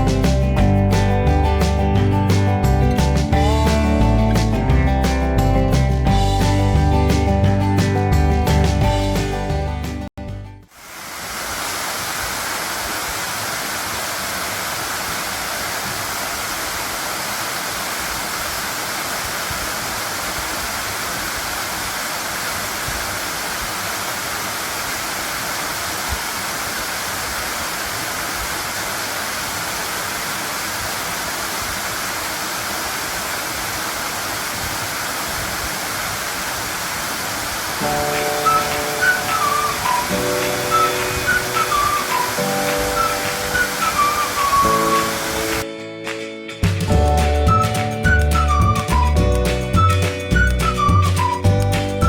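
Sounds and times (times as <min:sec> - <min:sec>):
waterfall rushing: 0:10.7 - 0:45.7.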